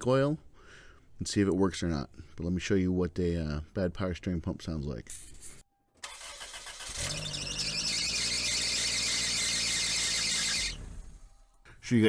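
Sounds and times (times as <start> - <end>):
high-pitched power steering pump whine: 6.0 - 11.5
car engine running: 7.0 - 11.5.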